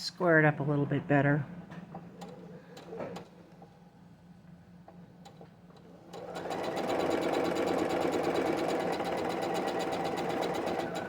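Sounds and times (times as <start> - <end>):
electric sewing machine stitching: 5.8 - 11.0.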